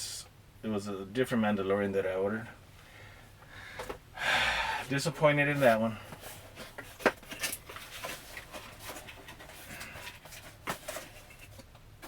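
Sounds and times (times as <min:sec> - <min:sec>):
box rustling: 0:06.1 - 0:11.7.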